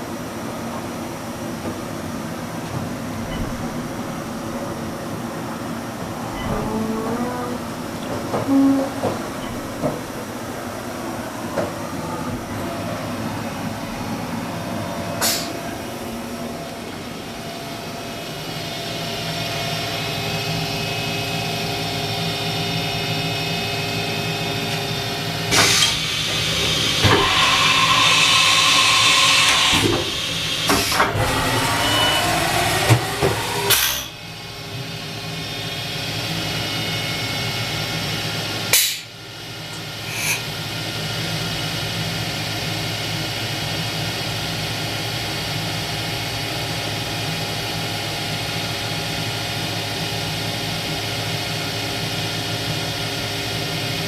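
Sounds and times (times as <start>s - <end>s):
machine mechanical hum: 0.0s - 54.0s
motor whines: 25.8s - 34.2s.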